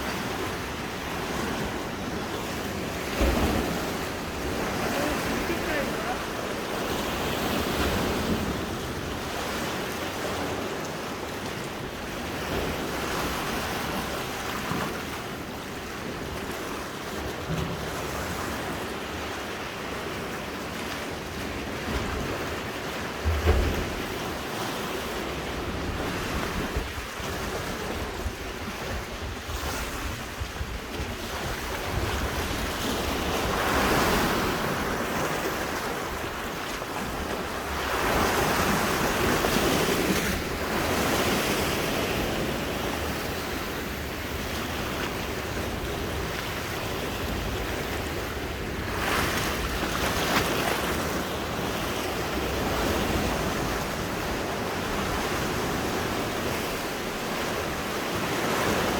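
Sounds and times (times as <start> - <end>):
sea waves washing onto shore: 0.0 - 58.9
wind rumbling on microphone: 21.5 - 58.9.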